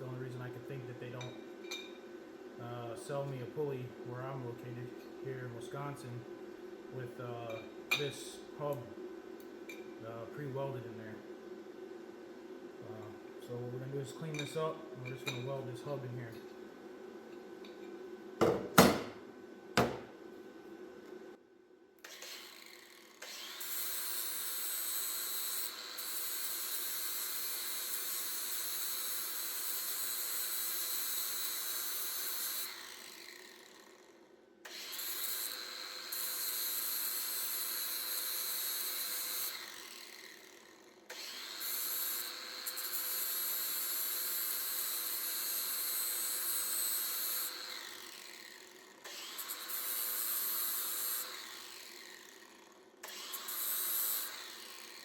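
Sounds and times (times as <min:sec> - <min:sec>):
electric grinder whining: 0:22.0 - 0:34.1, 0:34.7 - 0:55.0.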